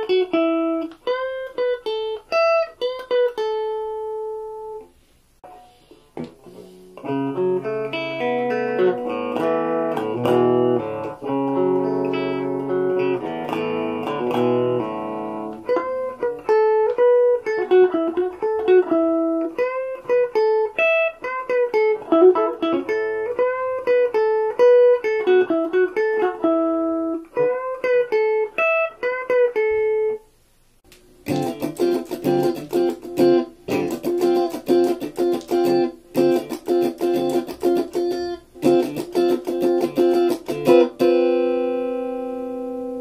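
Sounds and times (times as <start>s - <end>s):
electric guitar lead melody: 0.0s - 30.2s, 31.2s - 43.0s
electric guitar chord strumming: 5.4s - 30.2s, 31.2s - 43.0s.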